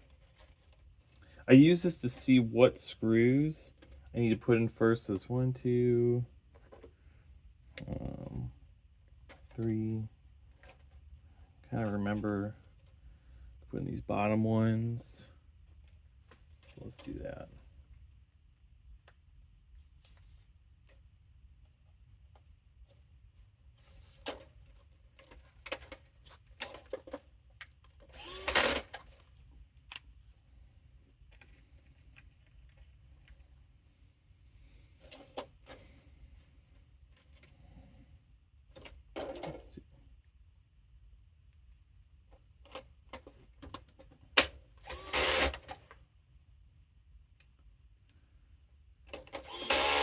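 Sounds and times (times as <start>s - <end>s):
electric screwdriver whirring: 28.1s - 28.9s, 44.8s - 45.7s, 49.4s - 50.0s.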